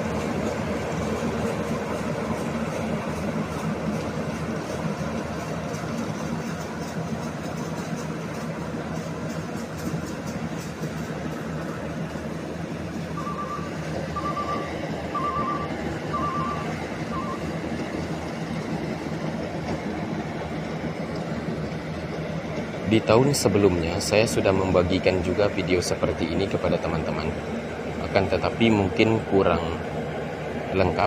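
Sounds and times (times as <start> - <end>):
harvester engine running: 0.0 - 31.0
reversing alarm beeps: 13.1 - 17.6.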